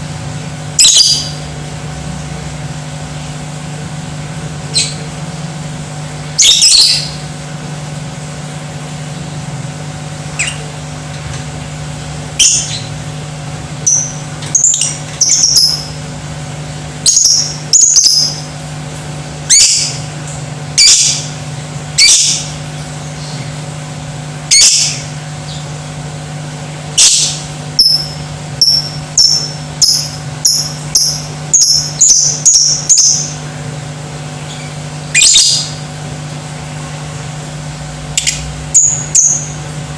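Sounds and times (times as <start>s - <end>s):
steady low hum: 0.0s - 39.9s
lovebird shrill calls: 6.4s - 7.2s, 27.0s - 33.4s, 35.1s - 35.7s.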